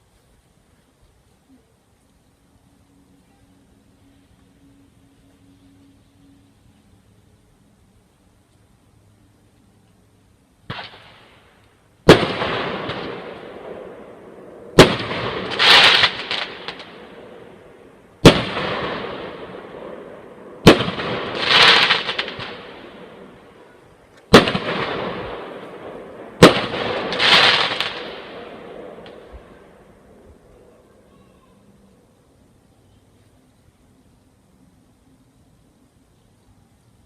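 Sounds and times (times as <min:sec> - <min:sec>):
firework crackling burst: 0:10.4 - 0:33.9
fireworks bangs with rumble: 0:12.0 - 0:13.8, 0:14.8 - 0:16.9, 0:18.2 - 0:19.5, 0:20.6 - 0:22.7, 0:24.3 - 0:29.4.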